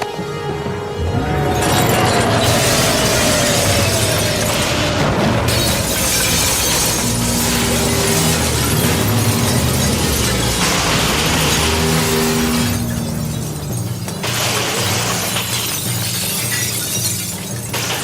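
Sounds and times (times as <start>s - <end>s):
dramatic orchestral score: 0.0s - 15.6s
loud sonic screeching: 1.0s - 13.2s
glass shattering: 1.6s - 18.0s.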